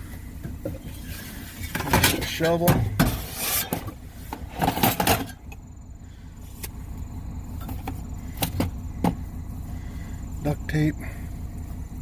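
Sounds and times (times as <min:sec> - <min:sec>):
diesel truck engine idling: 0:00.0 - 0:12.0
scraping rustle: 0:00.7 - 0:05.4.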